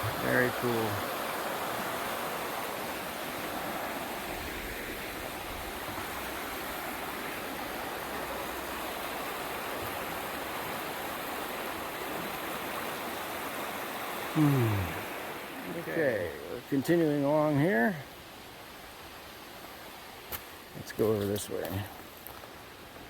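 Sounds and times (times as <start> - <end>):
river rushing: 0.0 - 21.6.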